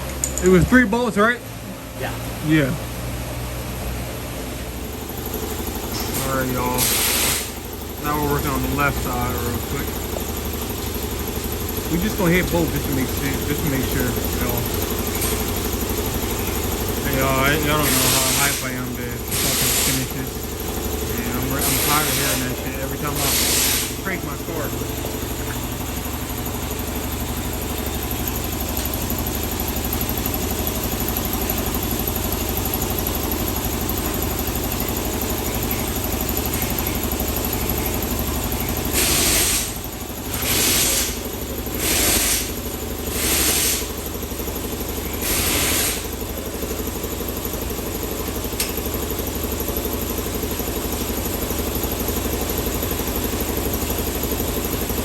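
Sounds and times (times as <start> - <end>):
aerosol can spraying: 19.3 - 20.0, 23.3 - 24.0, 41.8 - 42.5, 43.2 - 43.9, 45.3 - 46.0.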